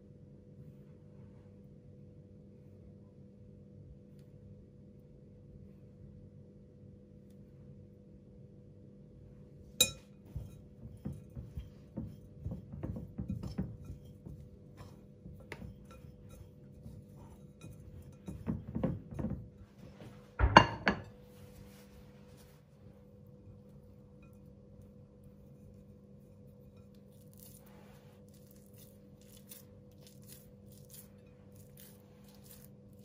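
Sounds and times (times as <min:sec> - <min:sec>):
dishes and cutlery clinking: 0:09.8 - 0:19.7, 0:20.4 - 0:21.2.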